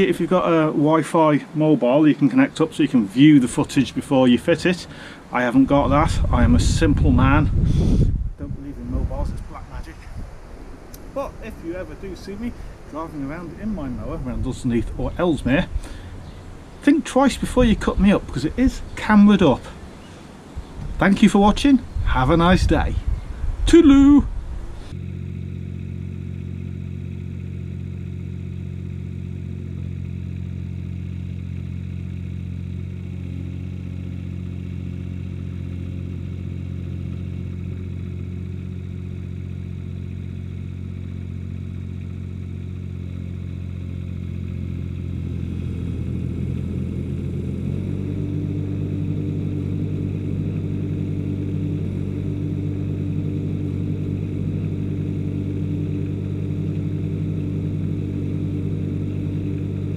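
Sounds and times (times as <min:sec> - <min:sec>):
mower engine running and revving: 0:24.6 - 0:59.9.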